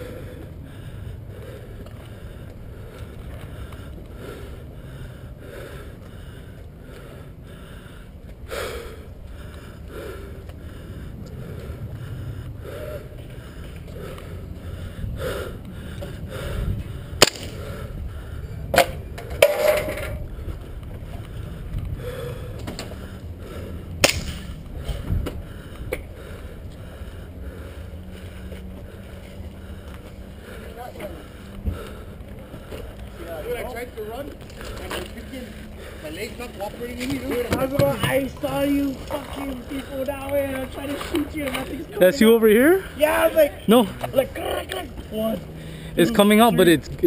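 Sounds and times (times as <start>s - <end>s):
wind rumble on microphone: 14.4s - 26.8s
airsoft guns firing: 17.2s - 17.6s.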